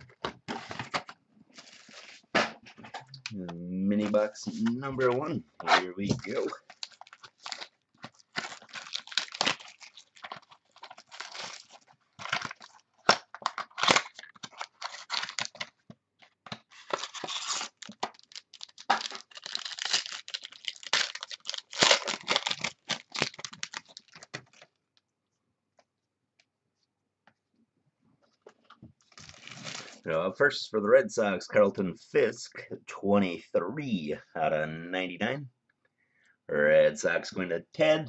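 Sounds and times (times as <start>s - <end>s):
wrapper tearing and crinkling: 0.6s - 2.3s, 6.2s - 15.7s, 16.7s - 24.7s, 29.1s - 30.0s.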